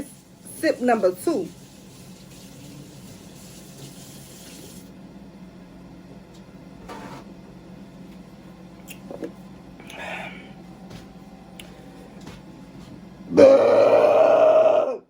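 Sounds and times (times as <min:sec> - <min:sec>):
fizzy soda hiss: 0:00.0 - 0:04.9.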